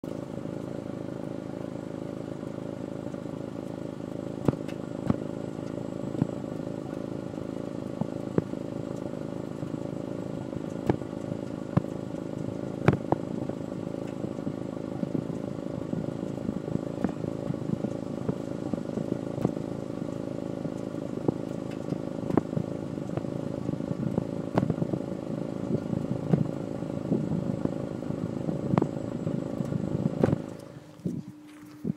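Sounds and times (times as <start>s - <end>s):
car engine idling: 0.0s - 31.9s
sharp engine pops: 4.4s - 5.3s, 10.7s - 12.0s, 12.8s - 13.2s, 17.0s - 19.6s, 21.6s - 22.5s, 24.1s - 24.9s, 29.6s - 30.7s.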